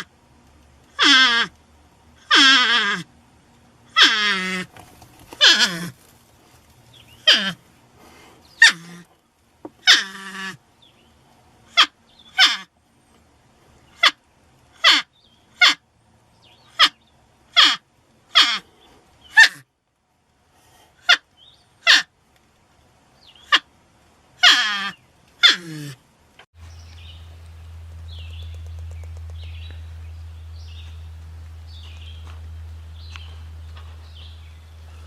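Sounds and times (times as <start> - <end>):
porcupine crying and squeaking: 1.0 - 1.5, 2.2 - 3.1, 3.9 - 4.7, 5.3 - 6.0, 7.2 - 7.6, 8.6 - 9.1, 9.8 - 10.6, 11.8 - 12.7, 14.8 - 15.8, 17.6 - 18.7, 19.3 - 19.6, 24.4 - 26.0.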